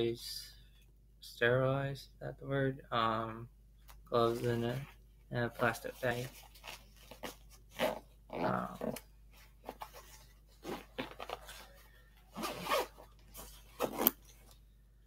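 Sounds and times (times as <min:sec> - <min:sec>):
bag rustling: 0:06.0 - 0:14.6
backpack zipper pulled: 0:06.6 - 0:09.0, 0:10.6 - 0:11.6, 0:12.3 - 0:14.3.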